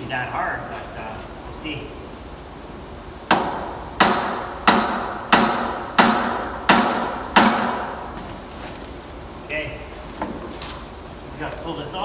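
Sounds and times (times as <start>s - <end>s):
hammer blows on metal: 3.3s - 8.0s.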